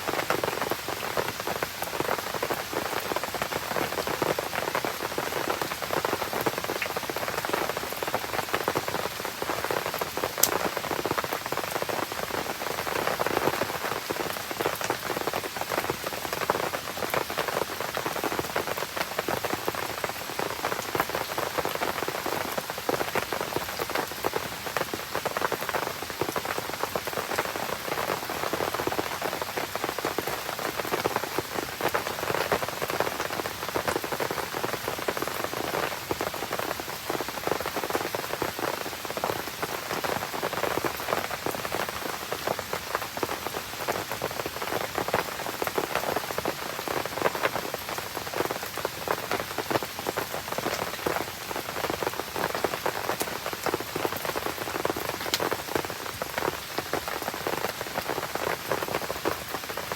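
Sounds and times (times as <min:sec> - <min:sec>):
steady rain patter: 0:00.0 - 0:59.9.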